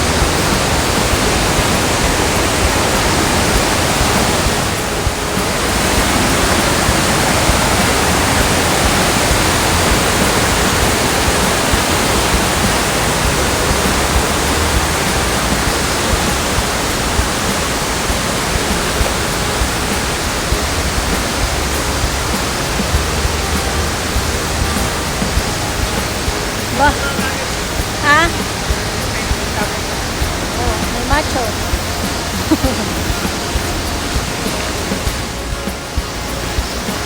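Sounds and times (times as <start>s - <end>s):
waterfall rushing: 0.0s - 37.0s.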